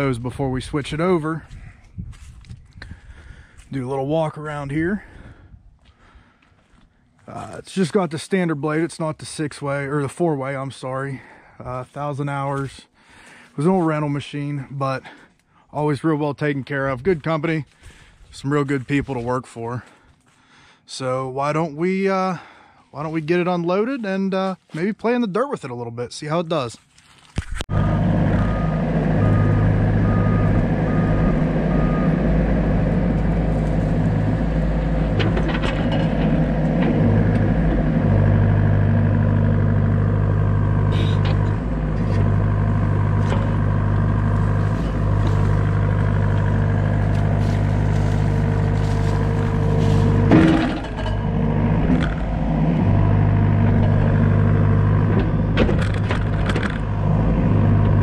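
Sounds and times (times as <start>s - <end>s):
excavator diesel engine running: 0.0s - 7.6s, 27.7s - 58.0s
metallic clanks: 35.0s - 37.8s, 40.9s - 42.3s, 49.3s - 52.3s.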